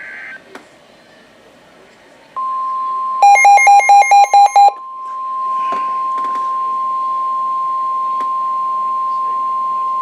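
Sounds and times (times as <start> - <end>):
rapid electronic beeps: 3.2 - 4.8
steady high-pitched alarm tone: 3.2 - 6.0.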